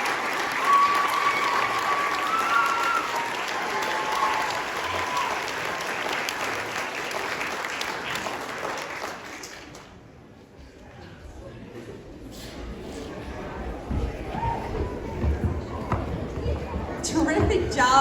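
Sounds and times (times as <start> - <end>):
audience applauding: 0.0 - 10.0.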